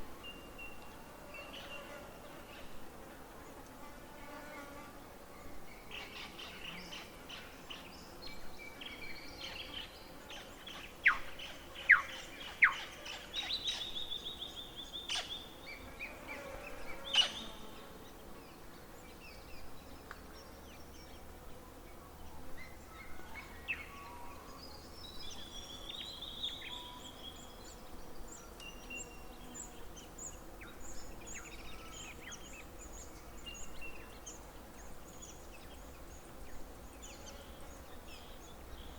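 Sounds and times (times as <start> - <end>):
birds chirping and trilling: 5.7 - 19.7.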